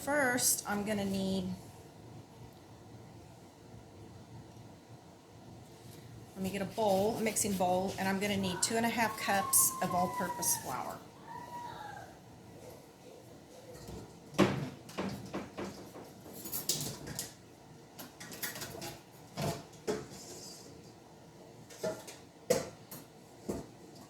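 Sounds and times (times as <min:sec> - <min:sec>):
dishes clunking and clattering: 0:13.7 - 0:17.3, 0:18.1 - 0:20.6, 0:21.7 - 0:23.7.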